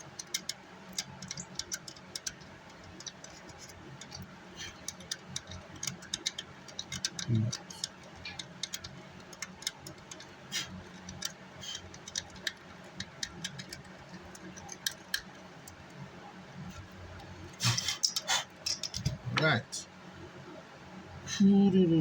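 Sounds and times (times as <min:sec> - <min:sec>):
faint low hum: 0:00.0 - 0:22.0.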